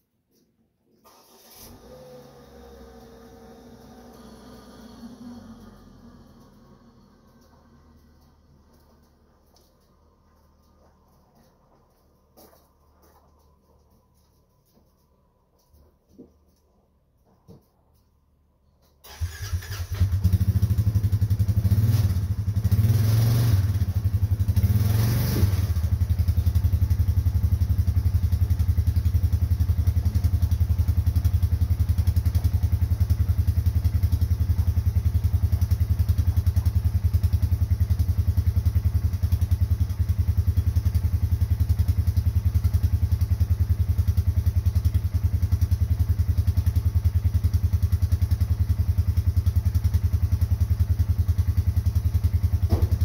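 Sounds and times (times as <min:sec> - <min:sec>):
car engine idling: 0:25.8 - 0:53.0.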